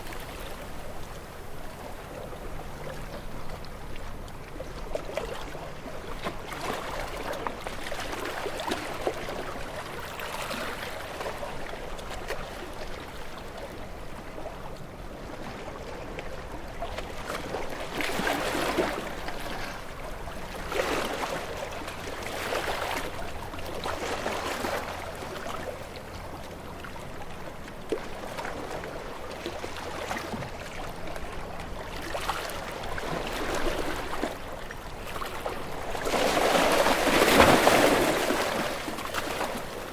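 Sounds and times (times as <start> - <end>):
waves splashing against rocks: 32.0 - 39.9.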